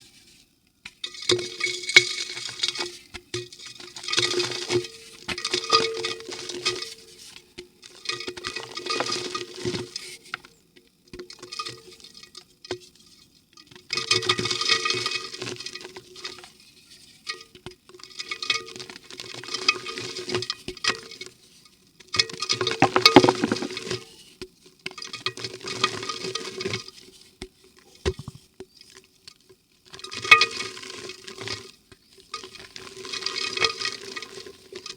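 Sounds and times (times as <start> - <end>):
dry mud crumbling in water: 22.8 - 23.8.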